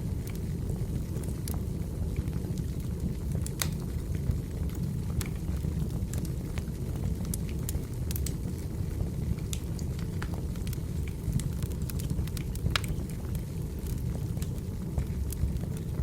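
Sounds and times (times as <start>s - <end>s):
flames rumbling: 0.0s - 16.0s
wood popping and crackling: 1.1s - 4.0s, 4.7s - 16.0s.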